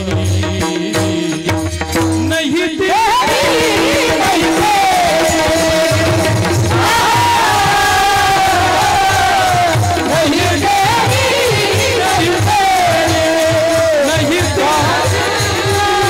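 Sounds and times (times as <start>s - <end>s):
jingling percussion: 0.0s - 16.0s
harmonium holding notes: 14.1s - 16.0s.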